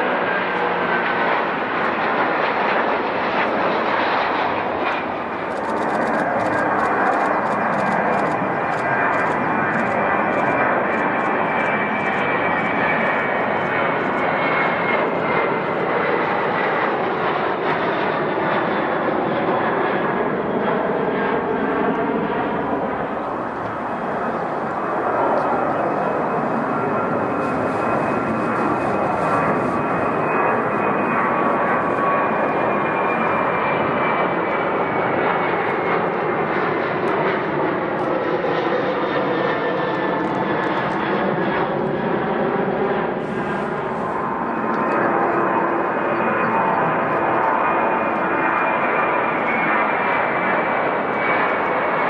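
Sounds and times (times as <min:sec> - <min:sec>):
jet airliner engines rushing: 0:00.0 - 0:52.0
faint engine whine: 0:04.5 - 0:17.8, 0:19.7 - 0:37.1, 0:42.2 - 0:49.5.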